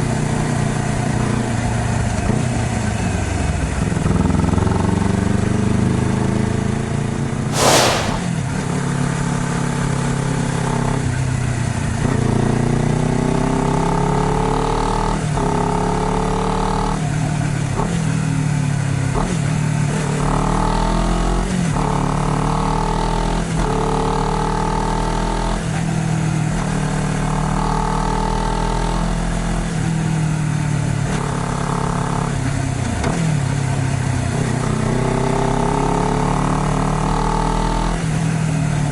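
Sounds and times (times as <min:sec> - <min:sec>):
short loud burst of noise: 0:07.5 - 0:08.4.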